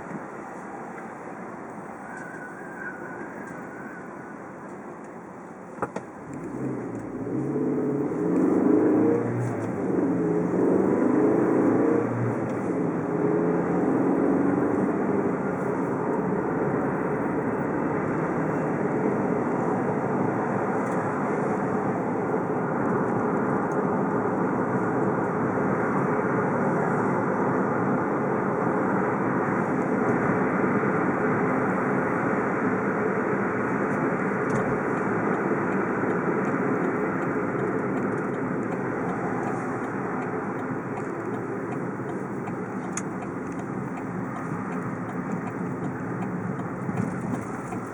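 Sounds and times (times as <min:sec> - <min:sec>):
car engine: 0:00.0 - 0:47.9
road noise: 0:00.0 - 0:47.9.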